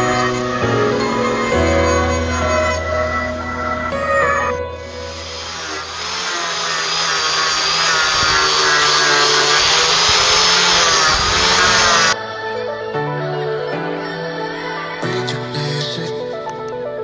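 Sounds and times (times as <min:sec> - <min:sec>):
power tool motor whining: 0:04.8 - 0:12.2.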